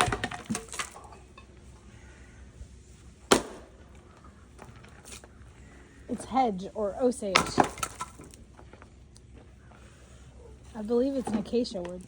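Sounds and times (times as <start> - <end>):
splitting tool striking log: 3.3 - 3.7, 7.3 - 8.4.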